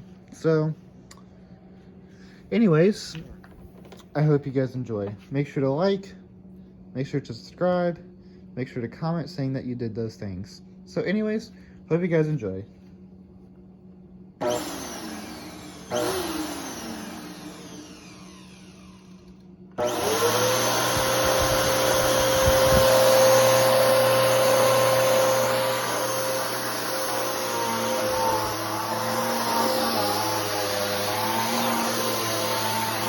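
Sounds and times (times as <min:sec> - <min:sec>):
vacuum cleaner motor whining: 0:14.4 - 0:33.0.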